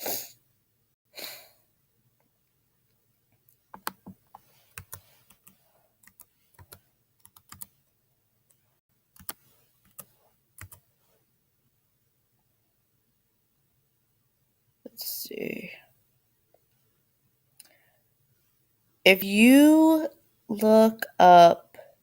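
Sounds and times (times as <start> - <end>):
breath-like hiss: 0.0 - 0.4
keyboard typing: 3.7 - 7.8, 9.2 - 10.9.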